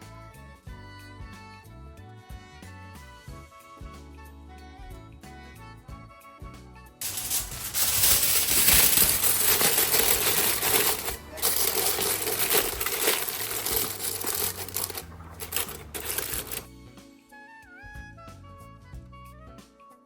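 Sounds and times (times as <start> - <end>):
small hard objects clinking: 7.0 - 16.6.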